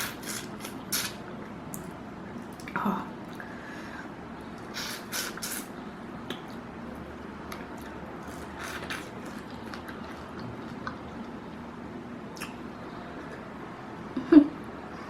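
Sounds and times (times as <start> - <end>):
squishy bursts: 0.0 - 1.2, 4.6 - 5.7
wet chewing and sucking: 0.0 - 3.4, 4.5 - 5.7, 7.5 - 11.4.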